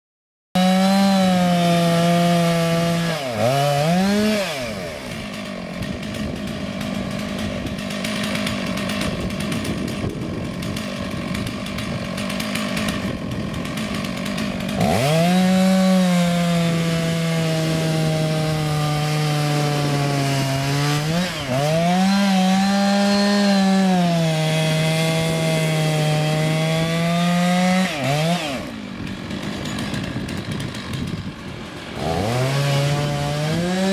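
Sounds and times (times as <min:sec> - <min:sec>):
chainsaw cutting wood: 0:00.6 - 0:33.9.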